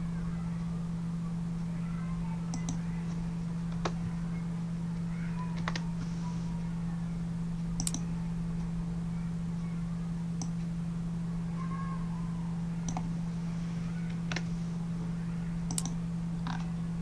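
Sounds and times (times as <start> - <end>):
low electrical hum: 0.0 - 17.0
keyboard clicks: 2.5 - 2.9, 7.8 - 8.1, 12.9 - 13.1, 15.7 - 16.7.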